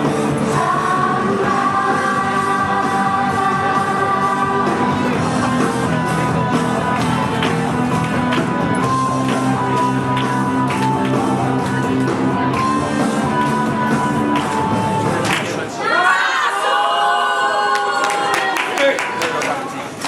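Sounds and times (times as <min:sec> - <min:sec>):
loud music with held notes: 0:00.0 - 0:15.6.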